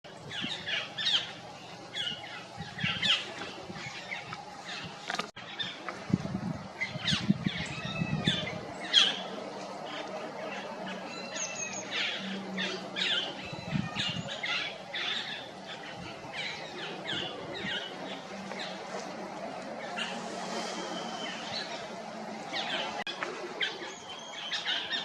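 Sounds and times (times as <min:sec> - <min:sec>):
small birds chirping: 0:00.1 - 0:05.9, 0:06.7 - 0:25.0.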